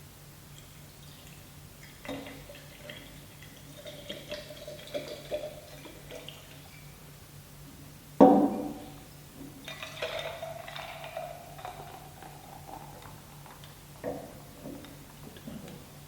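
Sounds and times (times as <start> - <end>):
liquid pouring into glass: 1.0 - 6.8, 9.6 - 14.6
glass set down with ringing knock: 8.2 - 8.8.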